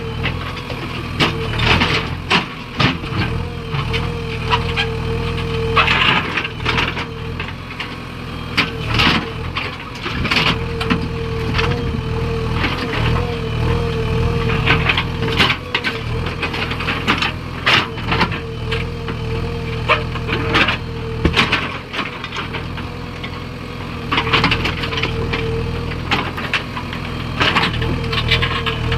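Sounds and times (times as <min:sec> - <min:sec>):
diesel engine running: 0:00.0 - 0:28.9.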